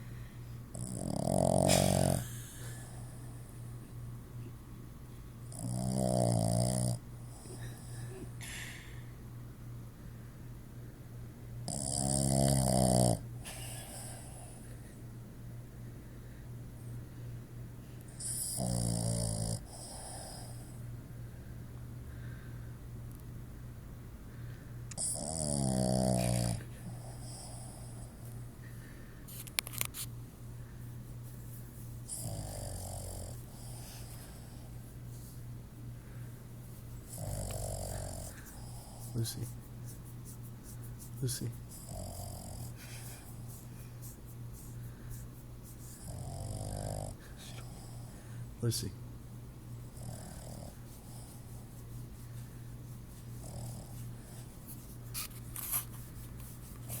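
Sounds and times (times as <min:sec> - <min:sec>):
dog snoring: 0:00.7 - 0:03.4, 0:05.5 - 0:07.9, 0:11.6 - 0:14.6, 0:18.1 - 0:20.8, 0:24.9 - 0:28.4, 0:32.1 - 0:34.8, 0:37.0 - 0:39.5, 0:41.2 - 0:43.5, 0:45.8 - 0:48.2, 0:49.8 - 0:51.6, 0:53.3 - 0:54.5.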